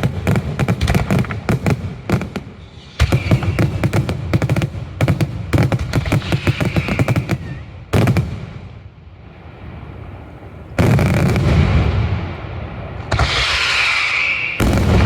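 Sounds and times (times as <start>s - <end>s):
firework burst rumbling: 0.0s - 15.0s
hiss: 2.5s - 4.0s, 6.0s - 7.6s, 13.1s - 14.6s.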